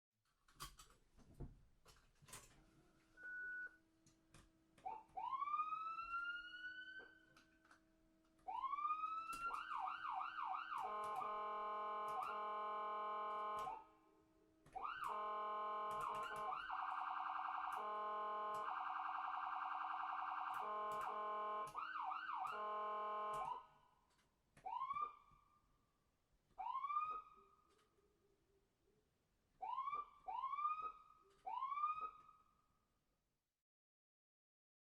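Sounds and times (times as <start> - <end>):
ambulance electronic siren: 4.8 - 7.5, 8.4 - 14.0, 14.7 - 23.8, 24.6 - 25.5, 26.6 - 27.6, 29.6 - 32.4
sharp clicks: 15.9 - 16.7.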